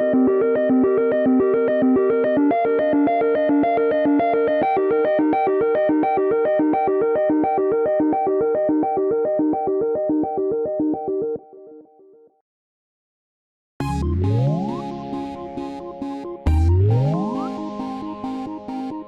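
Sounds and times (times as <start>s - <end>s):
synthesizer ringtone melody: 13.8s - 19.0s.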